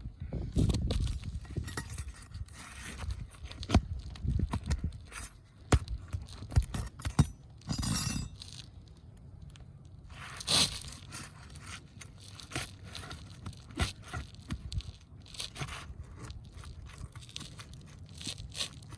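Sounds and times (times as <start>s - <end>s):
shingles scraping and tearing: 0.9s - 8.7s, 10.1s - 18.9s
nails pried from shingles: 5.8s - 8.4s.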